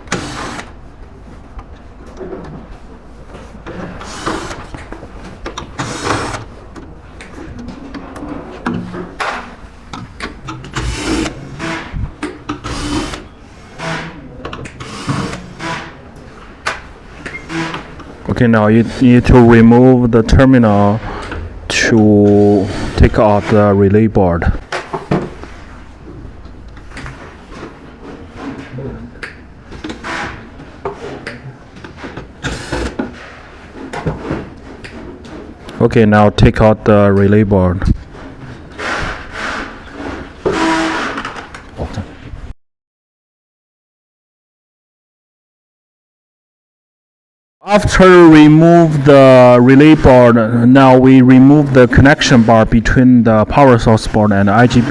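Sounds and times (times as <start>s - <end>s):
hand tools rubbing and clicking: 3.6s - 6.9s, 7.8s - 16.0s.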